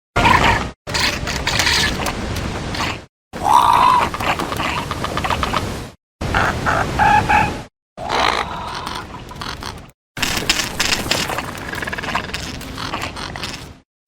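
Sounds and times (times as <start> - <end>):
bird-like creature calls: 2.8 - 5.7, 6.3 - 13.8.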